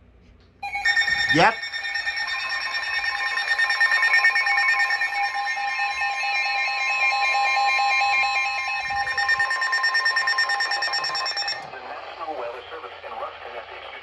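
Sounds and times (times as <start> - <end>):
electronic alert alarm: 0.6 - 11.7
rapidly alternating beep: 0.6 - 11.8.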